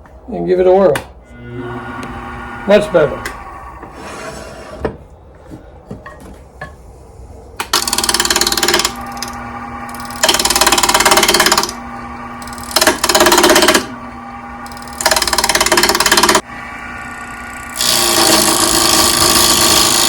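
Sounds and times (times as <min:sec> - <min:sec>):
wood lathe humming: 0:01.2 - 0:04.2, 0:07.7 - 0:20.0
turning tool scraping wood: 0:01.7 - 0:04.8, 0:17.7 - 0:20.0.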